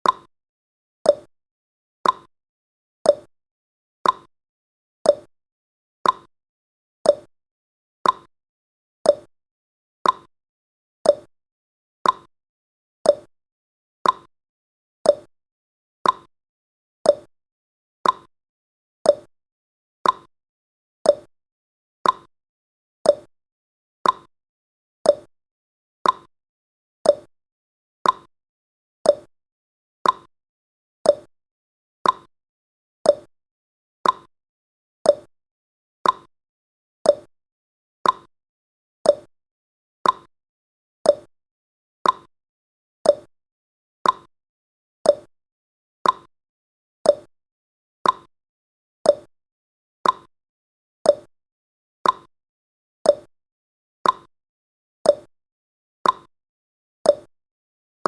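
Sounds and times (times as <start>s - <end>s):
timer ticking: 0.0s - 0.3s, 1.1s - 1.3s, 2.0s - 2.3s, 3.1s - 3.3s, 4.0s - 4.3s, 5.1s - 5.3s, 6.0s - 6.3s, 7.1s - 7.3s, 8.0s - 8.3s, 9.1s - 9.3s, 10.0s - 10.3s, 11.1s - 11.3s, 12.0s - 12.3s, 13.1s - 13.3s, 14.0s - 14.3s, 15.1s - 15.3s, 16.0s - 16.3s, 17.1s - 17.3s, 18.0s - 18.3s, 19.1s - 19.3s, 20.0s - 20.3s, 21.1s - 21.3s, 22.0s - 22.3s, 23.1s - 23.3s, 24.0s - 24.3s, 25.1s - 25.3s, 26.0s - 26.3s, 27.0s - 27.3s, 28.0s - 28.3s, 29.1s - 29.3s, 30.0s - 30.3s, 31.1s - 31.3s, 32.0s - 32.3s, 33.1s - 33.3s, 34.0s - 34.3s, 35.1s - 35.3s, 36.0s - 36.3s, 37.1s - 37.3s, 38.0s - 38.3s, 39.1s - 39.3s, 40.0s - 40.3s, 41.1s - 41.3s, 42.0s - 42.3s, 43.0s - 43.3s, 44.0s - 44.3s, 45.1s - 45.3s, 46.0s - 46.3s, 47.1s - 47.3s, 48.0s - 48.3s, 49.1s - 49.3s, 50.0s - 50.3s, 51.1s - 51.3s, 52.0s - 52.3s, 53.1s - 53.3s, 54.0s - 54.3s, 55.1s - 55.3s, 56.0s - 56.3s, 57.1s - 57.3s.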